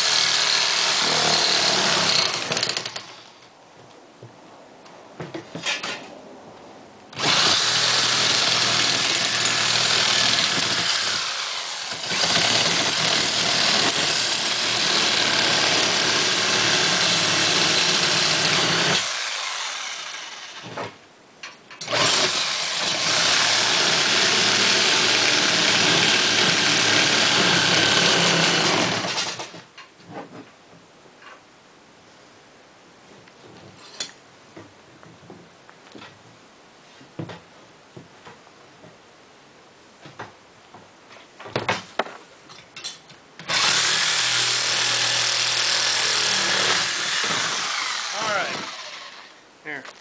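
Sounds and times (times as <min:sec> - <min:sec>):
power tool running hard: 0:43.5 - 0:49.3.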